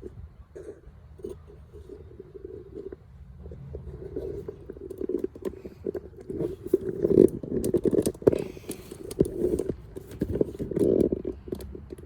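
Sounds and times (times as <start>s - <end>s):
hand tools clicking and knocking: 4.3s - 12.0s.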